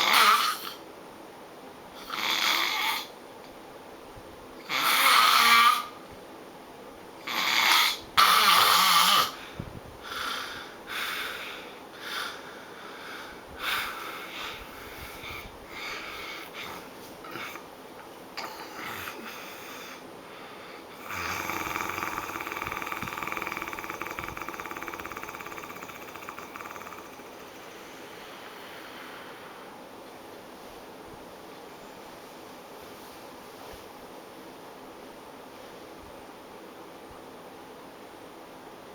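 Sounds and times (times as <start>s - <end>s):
person snoring loudly: 7.3s - 9.4s, 21.0s - 29.6s.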